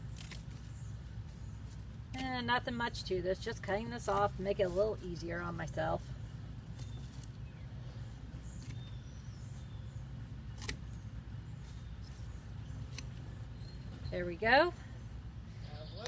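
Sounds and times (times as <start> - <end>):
plant stems snipped: 0.0 - 0.6, 10.5 - 10.9, 12.8 - 13.2.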